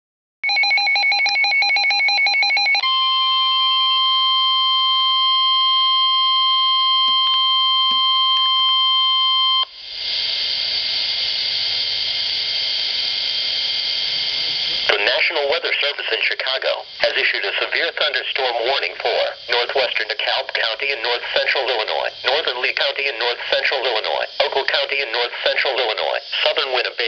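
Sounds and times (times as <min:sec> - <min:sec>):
steady warning alarm tone: 0:00.4 - 0:27.0
radio hiss: 0:09.8 - 0:27.0.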